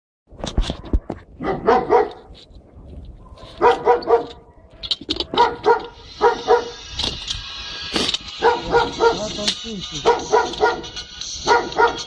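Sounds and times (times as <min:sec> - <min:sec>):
dog barking: 0:01.4 - 0:02.3, 0:03.2 - 0:06.8, 0:08.4 - 0:09.4, 0:10.0 - 0:12.0.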